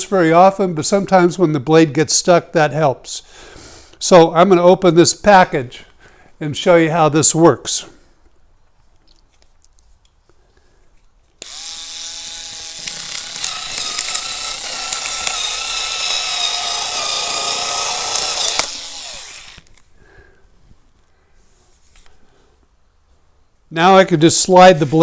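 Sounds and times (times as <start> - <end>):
cordless cutter wheel whining: 11.4 - 19.9
gritty cutting of plastic: 11.4 - 19.9.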